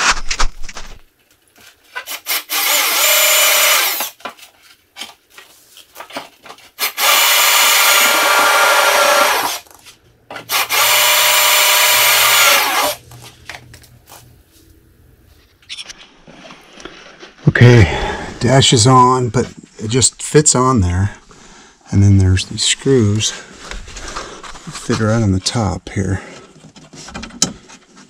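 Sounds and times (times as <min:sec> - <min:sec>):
power drill running: 0:02.1 - 0:04.2, 0:06.8 - 0:09.7, 0:10.5 - 0:13.0.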